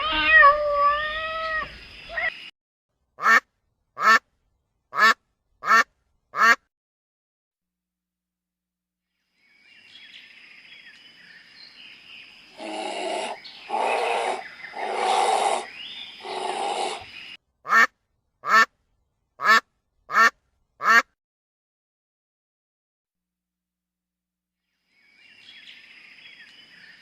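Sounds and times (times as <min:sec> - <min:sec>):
faint birdsong: 0:00.0 - 0:02.5, 0:09.1 - 0:17.4, 0:24.6 - 0:27.0
loud harsh animal calls: 0:12.5 - 0:17.4
short sharp animal calls: 0:12.6 - 0:17.2.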